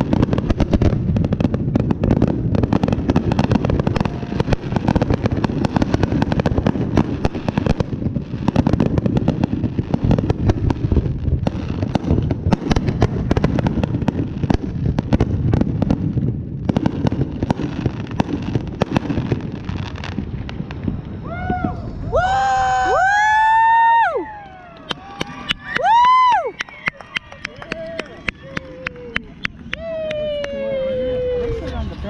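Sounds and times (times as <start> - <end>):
fireworks pops and crackles: 0.0 - 22.2, 24.3 - 32.0
low rumble of fireworks bangs: 0.0 - 24.0.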